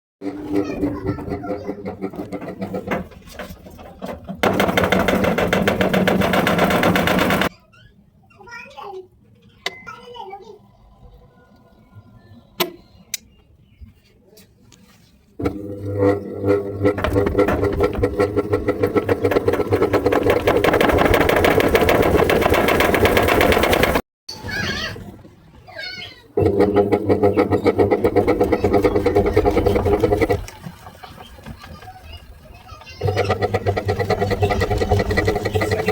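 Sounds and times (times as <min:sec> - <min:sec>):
washing machine hum: 0:00.2 - 0:07.5, 0:15.4 - 0:35.9
washing machine rattling in spin: 0:00.2 - 0:07.5, 0:15.4 - 0:24.0, 0:26.4 - 0:35.9.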